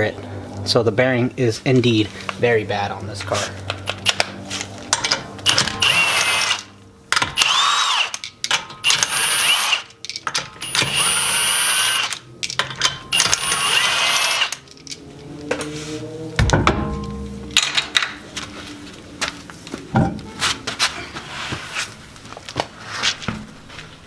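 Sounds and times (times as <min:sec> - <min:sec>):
impact wrench spinning: 0:03.8 - 0:14.8
low thump: 0:16.4 - 0:18.0.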